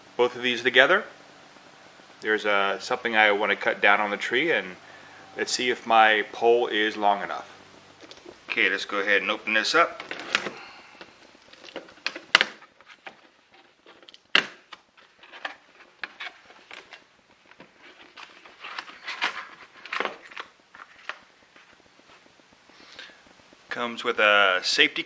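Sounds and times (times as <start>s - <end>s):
packaging rustling: 2.0s - 23.4s.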